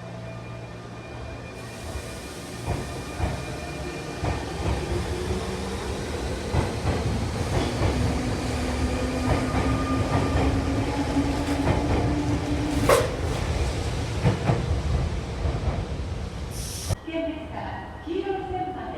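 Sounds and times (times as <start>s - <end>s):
electric train rumbling: 0.0s - 17.0s.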